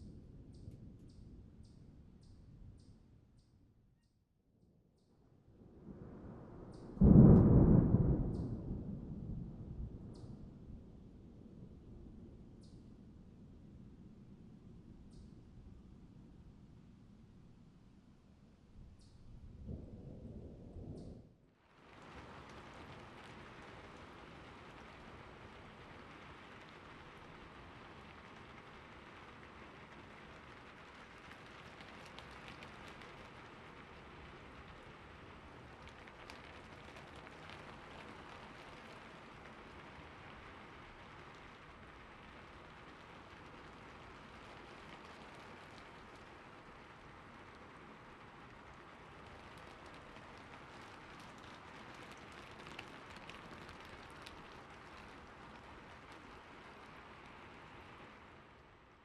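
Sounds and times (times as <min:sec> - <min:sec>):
faint steady rain: 0:00.0 - 0:04.1, 0:05.0 - 0:59.0
raindrop ticks: 0:00.0 - 0:04.1, 0:06.0 - 0:10.8, 0:11.9 - 0:15.9, 0:20.8 - 0:59.0.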